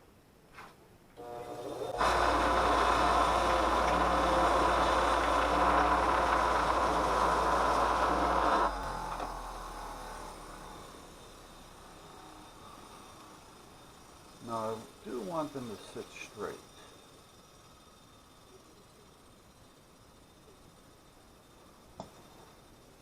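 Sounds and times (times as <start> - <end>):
motor humming: 1.2 - 16.0
wire wheel scratching steel: 1.2 - 16.3.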